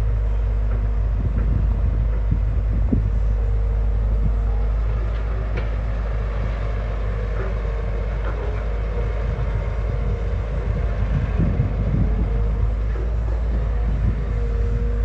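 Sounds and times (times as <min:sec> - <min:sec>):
excavator diesel engine rumbling: 0:00.0 - 0:15.0.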